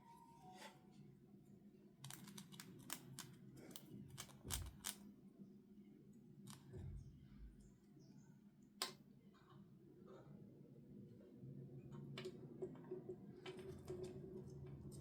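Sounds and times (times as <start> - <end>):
plastic toy pieces clicking: 2.1 - 5.0.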